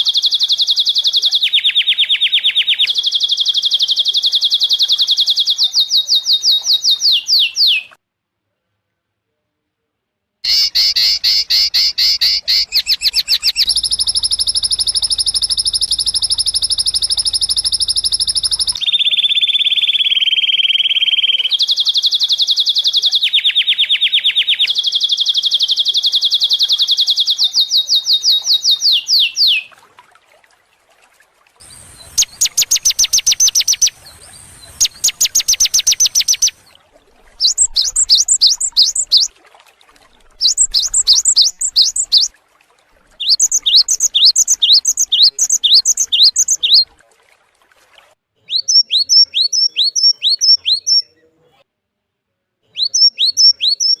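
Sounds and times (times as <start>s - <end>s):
bird high trill: 10.4s - 25.6s, 31.6s - 36.7s, 37.3s - 39.3s, 40.4s - 42.3s, 43.2s - 46.9s
quick rising bird chirps: 10.5s - 21.4s, 31.6s - 39.3s, 40.3s - 42.3s, 43.1s - 46.9s.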